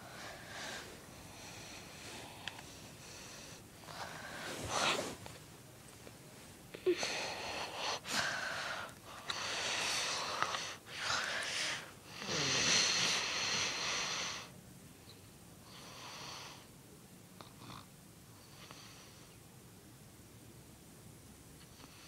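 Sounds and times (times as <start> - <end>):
person snoring: 11.0 - 13.8.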